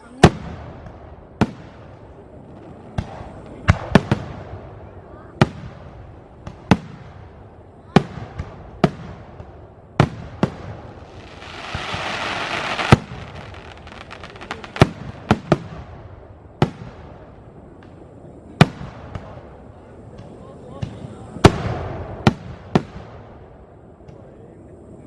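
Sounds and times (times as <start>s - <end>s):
fireworks bursting: 0.0s - 19.6s, 20.2s - 24.2s
firework crackles: 0.0s - 19.7s
hissing rush: 11.0s - 14.8s.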